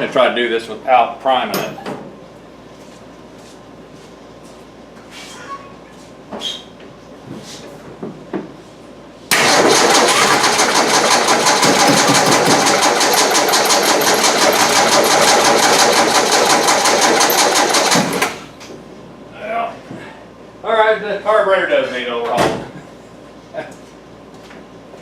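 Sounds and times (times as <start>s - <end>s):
engine starter cranking: 9.3s - 18.4s
engine running: 9.3s - 18.5s.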